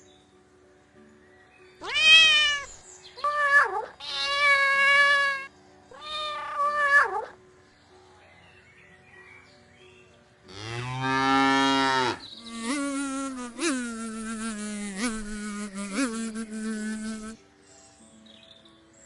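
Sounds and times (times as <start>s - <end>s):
insect buzzing: 1.8s - 2.8s, 3.9s - 5.5s, 10.6s - 17.4s
cow mooing: 10.5s - 12.2s.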